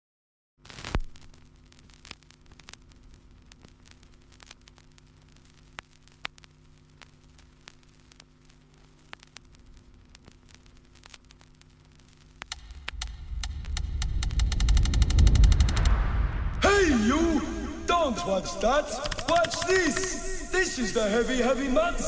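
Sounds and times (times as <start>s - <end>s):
faint electrical hum: 0.6s - 15.6s
crackling clicks: 0.6s - 16.2s, 19.0s - 20.5s.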